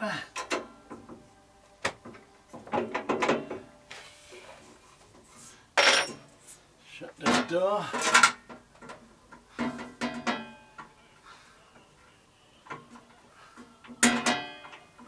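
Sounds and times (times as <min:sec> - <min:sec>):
metallic clanks: 0:14.0 - 0:14.8.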